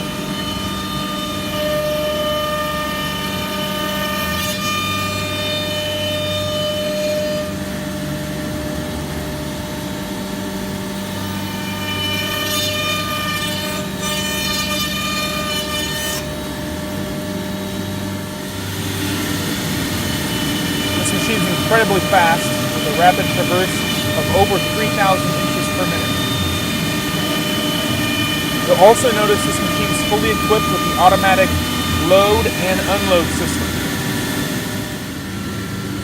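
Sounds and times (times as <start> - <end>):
router machine hum and whine: 0.0 - 36.0.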